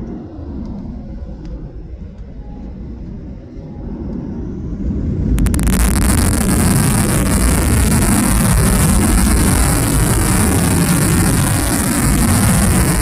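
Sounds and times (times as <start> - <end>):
jet engines roaring with hiss: 4.1 - 13.0.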